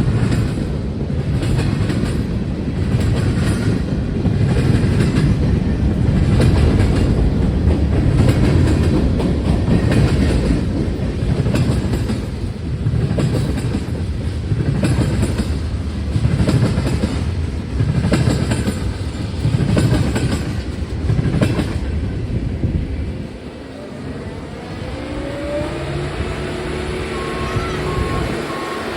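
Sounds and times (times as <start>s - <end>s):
light ticks of wheels over track: 0.0s - 22.0s
train wheels rumbling on rail: 0.0s - 28.9s.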